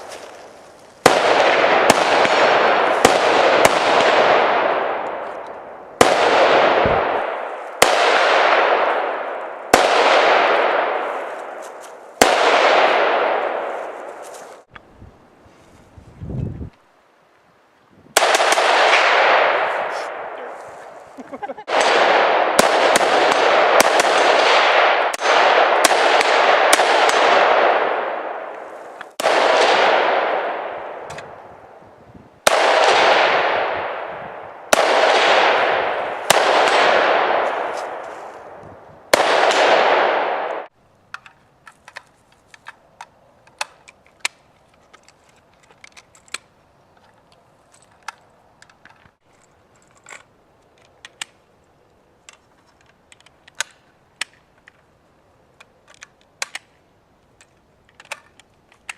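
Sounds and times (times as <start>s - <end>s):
rifle shots echoing: 1.0s - 14.7s, 18.2s - 20.6s, 21.6s - 31.8s, 32.4s - 40.7s
faint scattered clicks: 40.9s - 58.9s.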